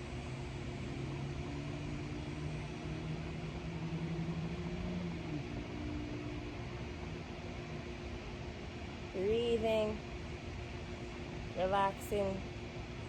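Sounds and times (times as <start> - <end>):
rising low tone: 0.0 - 7.5
low mechanical hum: 0.0 - 13.0
room noise hiss: 0.0 - 13.0.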